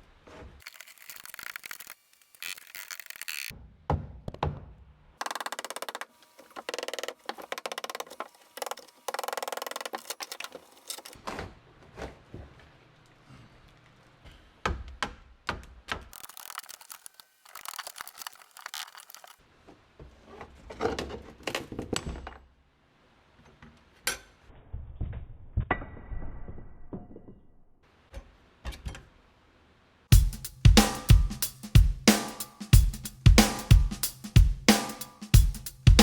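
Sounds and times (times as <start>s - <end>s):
music with drum kit: 30.1s - 36.0s.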